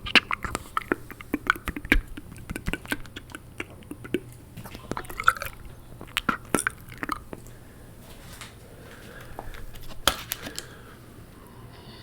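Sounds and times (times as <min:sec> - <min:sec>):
tongue and lip clicks: 0:00.0 - 0:07.7
wet mouth smacking: 0:00.0 - 0:10.8.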